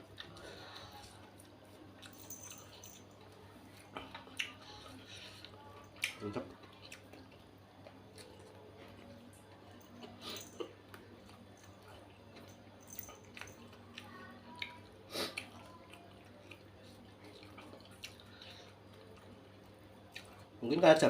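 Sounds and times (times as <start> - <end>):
faint low hum: 0.0 - 21.0
wet chewing clicks and smacks: 5.4 - 8.5, 15.4 - 19.4.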